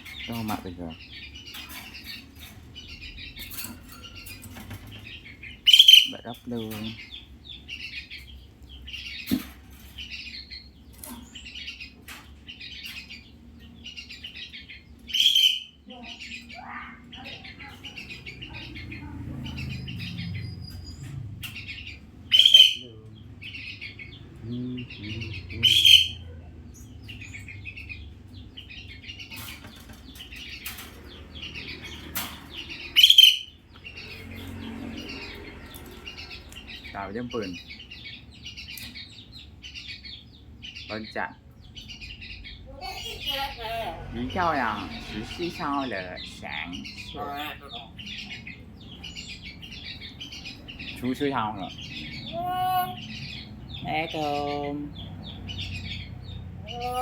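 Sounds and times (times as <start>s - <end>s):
myna high chirps: 4.0s - 6.3s, 13.2s - 28.0s.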